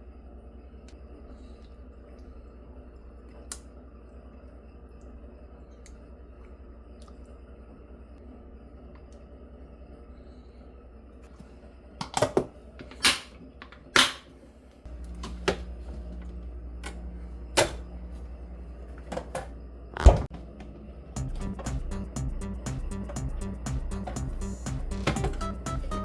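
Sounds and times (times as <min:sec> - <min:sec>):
low steady hum: 0:21.0 - 0:26.0.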